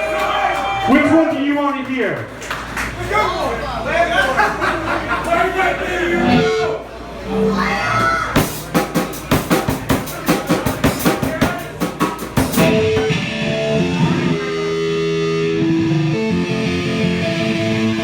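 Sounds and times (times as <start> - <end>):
guitar chords: 6.1 - 10.0, 12.4 - 18.0
quick drum hits: 8.4 - 13.2.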